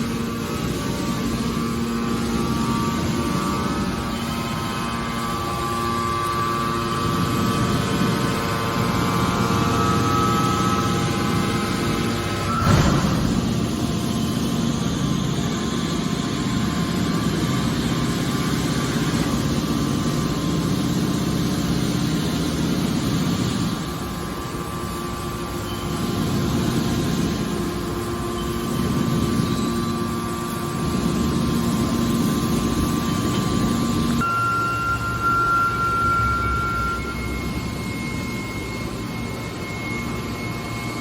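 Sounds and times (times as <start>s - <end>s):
baler machine hum: 0.0s - 41.0s
faint steady tones: 32.2s - 41.0s.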